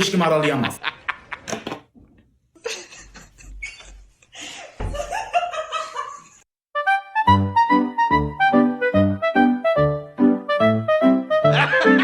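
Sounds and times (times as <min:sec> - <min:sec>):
background music with piano: 0:07.2 - 0:12.0
person laughing: 0:11.4 - 0:12.0.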